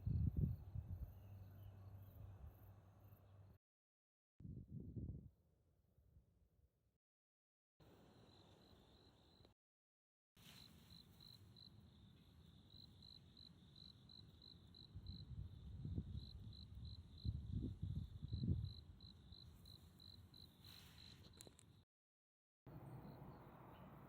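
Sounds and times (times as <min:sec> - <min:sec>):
cricket chirping: 0:00.0 - 0:03.6, 0:07.8 - 0:09.6, 0:10.4 - 0:21.8, 0:22.7 - 0:24.0.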